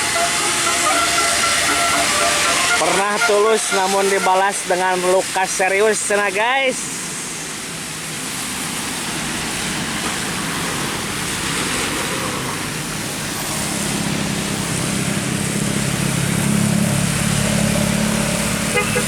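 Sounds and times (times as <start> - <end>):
large vehicle engine drone: 0.0 - 4.8, 8.9 - 19.0
road traffic noise: 0.0 - 19.0.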